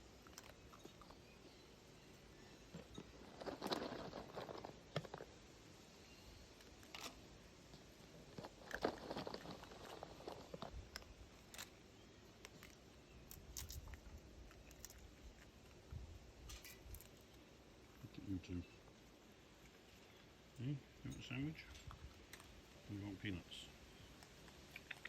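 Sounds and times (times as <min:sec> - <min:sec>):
animal crunching dry biscuits: 0:00.0 - 0:20.6, 0:21.2 - 0:25.0.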